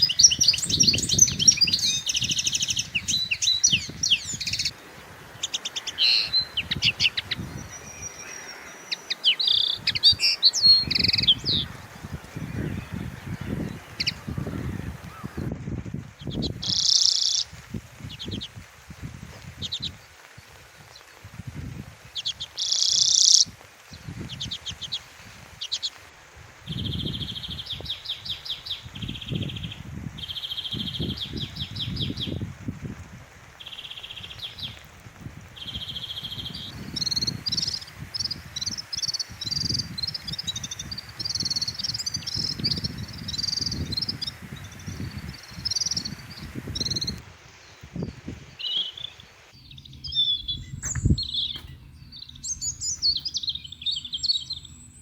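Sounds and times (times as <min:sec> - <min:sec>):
songbirds singing: 0:00.0 - 0:15.5, 0:16.1 - 0:18.7, 0:22.0 - 0:26.0, 0:26.7 - 0:32.6, 0:33.6 - 0:55.0
low uneven rumble: 0:49.3 - 0:55.0.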